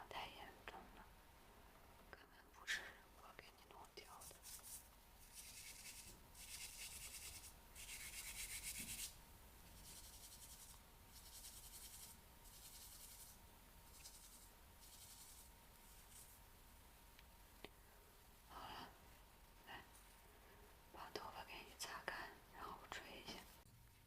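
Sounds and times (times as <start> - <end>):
tool scratching on microphone: 4.3 - 9.1, 9.8 - 15.5.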